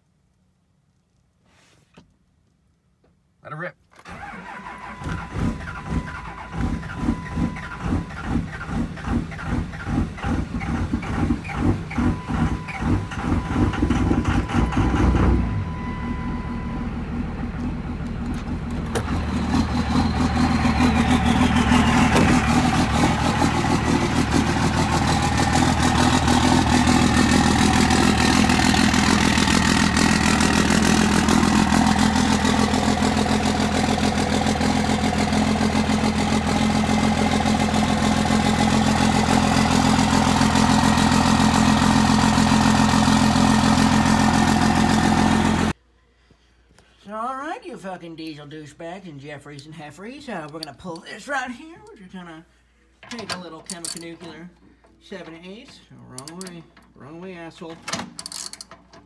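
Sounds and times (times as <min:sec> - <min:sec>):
diesel engine running: 0:04.2 - 0:45.8.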